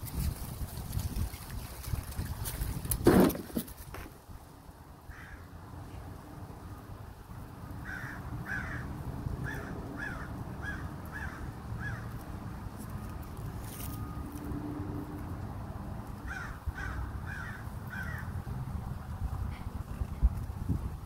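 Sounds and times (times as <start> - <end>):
crow calling: 5.1 - 5.5, 7.8 - 12.2, 16.2 - 18.4.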